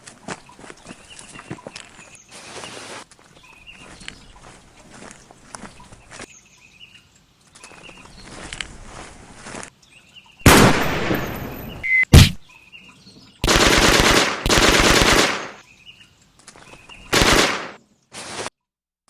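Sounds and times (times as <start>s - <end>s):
faint birdsong chirps: 0.0s - 10.5s, 11.2s - 13.5s, 15.6s - 17.2s
gunshots with echo: 10.4s - 12.4s, 13.4s - 15.6s, 17.1s - 17.8s
machine-gun bursts: 13.4s - 15.6s, 17.1s - 17.8s.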